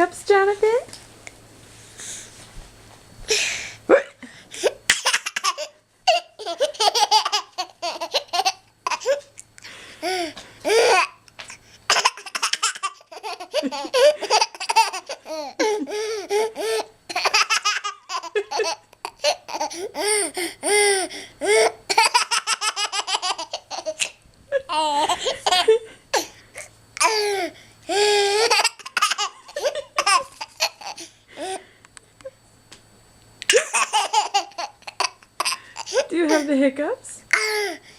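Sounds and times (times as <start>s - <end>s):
baby laughing: 4.9s - 9.3s, 10.0s - 11.2s, 11.9s - 20.2s, 21.4s - 25.8s, 28.0s - 31.0s, 33.5s - 36.5s.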